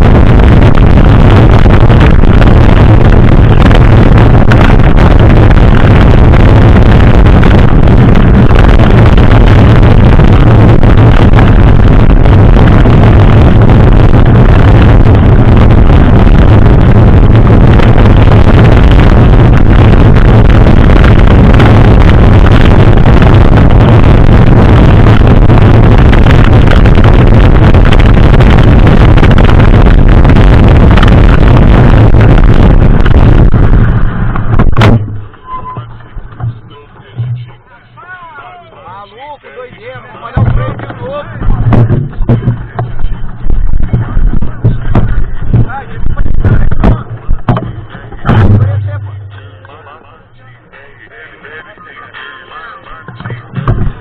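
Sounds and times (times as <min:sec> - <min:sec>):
wind buffeting microphone: 0:00.0 - 0:36.7, 0:40.4 - 0:49.4
bike tyre rumble: 0:00.0 - 0:37.5, 0:39.8 - 0:49.6, 0:53.3 - 0:54.0.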